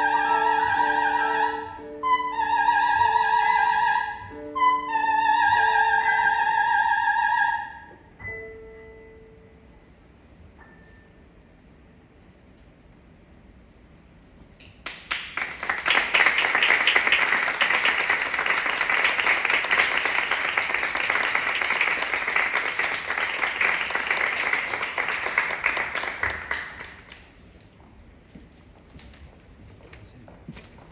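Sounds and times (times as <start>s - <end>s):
audience applauding: 14.8s - 27.4s.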